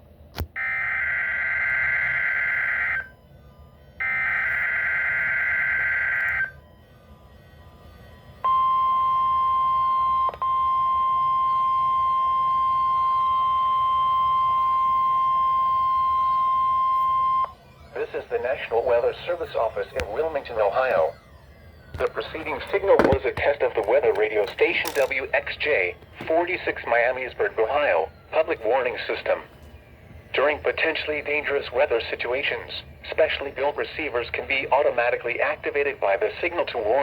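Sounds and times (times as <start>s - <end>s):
steady weather alert tone: 14.9s - 37.0s.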